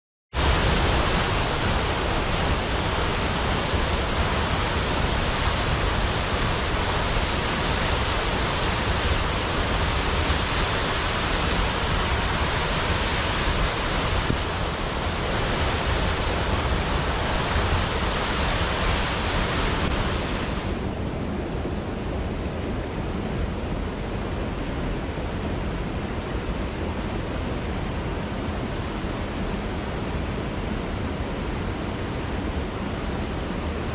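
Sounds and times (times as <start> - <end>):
waterfall roaring: 0.4 - 33.9.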